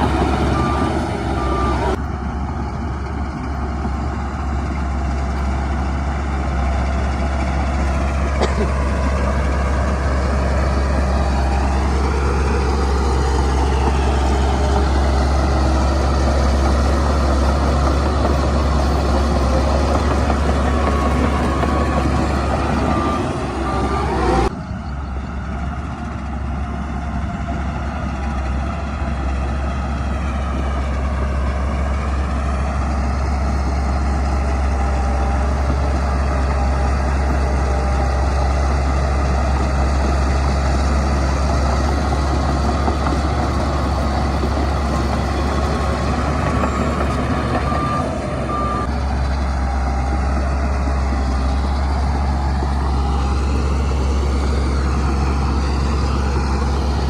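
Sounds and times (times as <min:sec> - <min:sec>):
reversing alarm beeps: 0:00.0 - 0:02.0, 0:07.8 - 0:24.5, 0:41.9 - 0:49.0
heavy diesel engine rumbling: 0:00.0 - 0:57.0.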